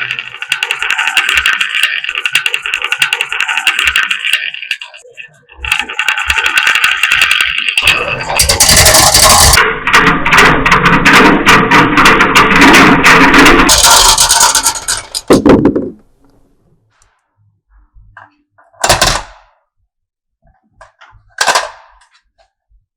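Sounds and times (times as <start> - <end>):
marbles rolling down wooden run: 0.0 - 16.0.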